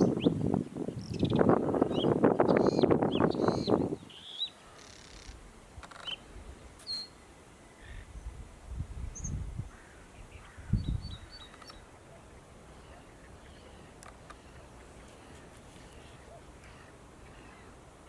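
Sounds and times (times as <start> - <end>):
wind rumbling on microphone: 0.0 - 4.2, 7.8 - 11.9.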